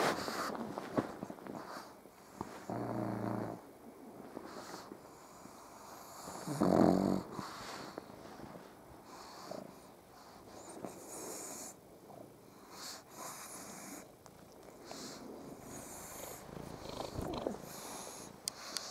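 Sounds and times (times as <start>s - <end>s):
cat purring: 1.1s - 3.7s, 4.5s - 8.0s, 9.1s - 18.8s
dog wheezy snoring: 1.6s - 3.7s, 4.5s - 8.0s, 9.0s - 11.8s, 12.5s - 14.1s, 14.8s - 18.9s.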